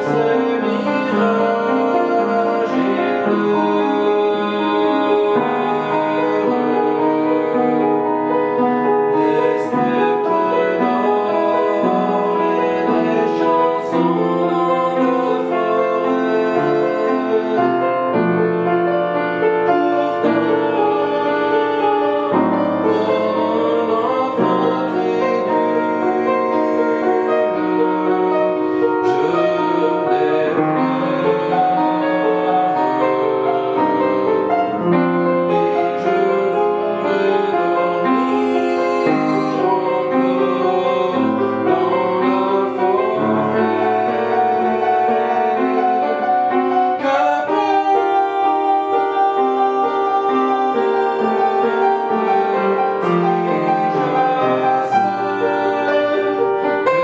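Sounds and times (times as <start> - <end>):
trained voice singing: 0.0 - 8.0, 9.1 - 18.0, 19.6 - 33.7, 34.6 - 57.0
piano chords: 0.0 - 57.0.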